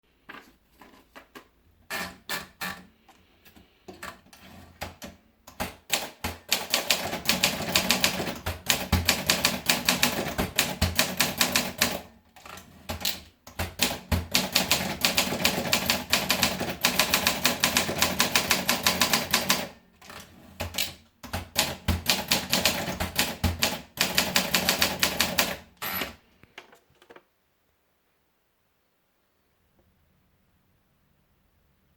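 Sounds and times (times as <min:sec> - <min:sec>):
typewriter keystrokes: 0:04.8 - 0:12.1, 0:12.9 - 0:26.1.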